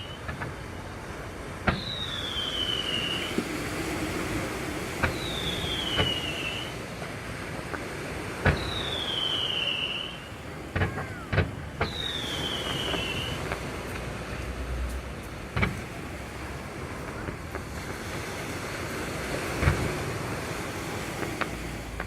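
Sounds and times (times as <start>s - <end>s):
falling firework whistle: 0.0s - 0.5s, 1.6s - 7.1s, 8.4s - 14.0s
firework bangs: 0.0s - 22.0s
steady hiss: 0.0s - 22.0s.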